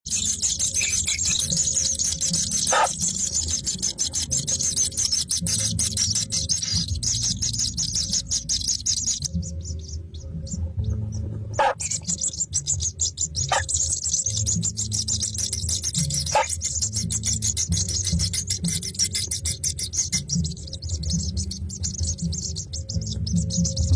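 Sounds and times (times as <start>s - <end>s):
baby birds chirping: 0.1s - 23.9s
short lower bird calls: 11.5s - 23.2s.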